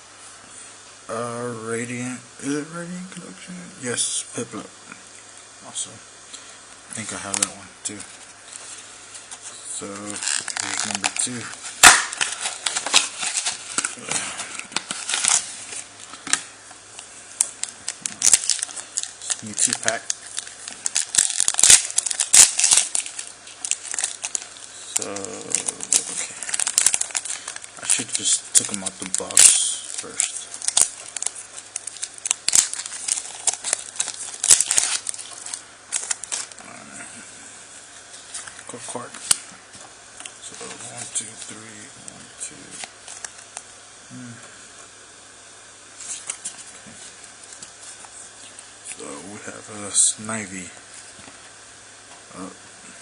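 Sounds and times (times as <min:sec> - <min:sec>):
foil wrapper crinkling: 0:07.0 - 0:36.7, 0:42.5 - 0:43.7, 0:46.0 - 0:49.2.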